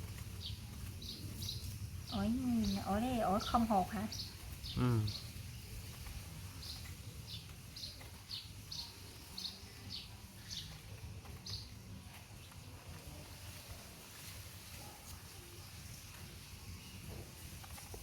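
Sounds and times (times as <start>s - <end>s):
small bird chirping: 0.0s - 18.0s.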